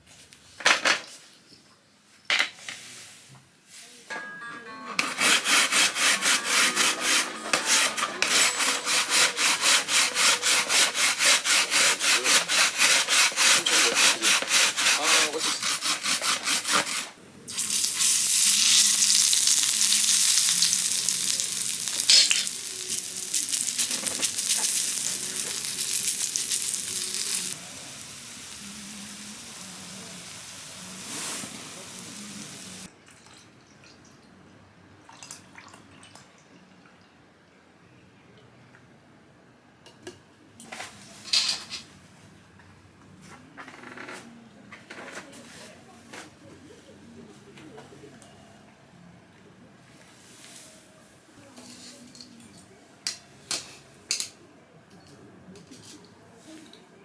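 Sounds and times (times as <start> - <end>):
rasping strokes: 5.0 - 17.2, 20.2 - 27.6
sizzling hiss: 17.5 - 32.9.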